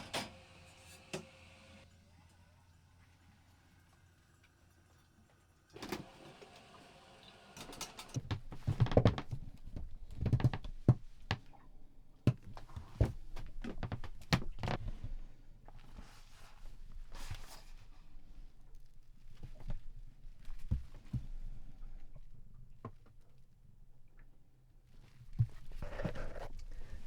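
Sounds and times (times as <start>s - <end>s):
objects knocking and thumping: 7.8s - 11.5s
rustling: 24.9s - 27.0s.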